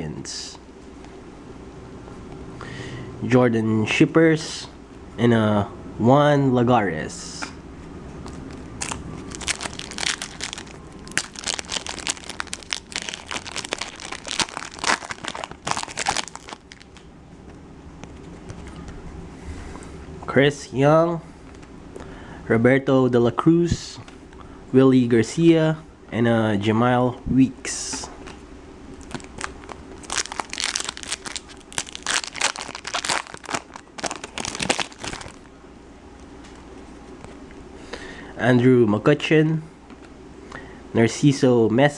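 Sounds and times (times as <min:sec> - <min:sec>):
foil wrapper tearing and crinkling: 0:08.8 - 0:17.0, 0:29.0 - 0:35.5.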